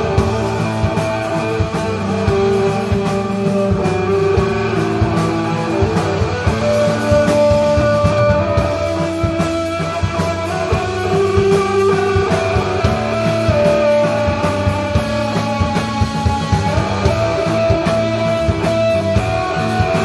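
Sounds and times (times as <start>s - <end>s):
drum beat: 0.0s - 20.0s
electric guitar sustained notes: 0.0s - 20.0s
rock band playing: 0.0s - 20.0s.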